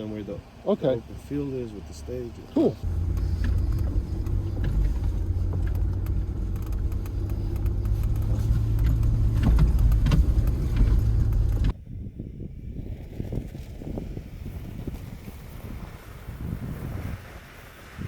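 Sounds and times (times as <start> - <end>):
vehicle engine and road rumble: 0.0 - 18.0
wind noise: 2.8 - 18.0
knocks and rattles: 2.9 - 11.7.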